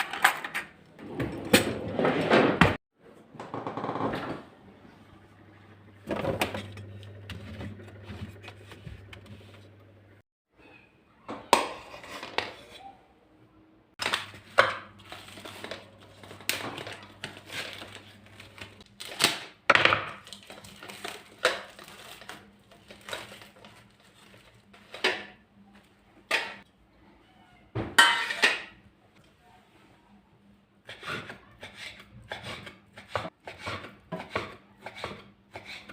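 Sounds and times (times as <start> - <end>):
dishes and utensils clattering: 27.8 - 28.8.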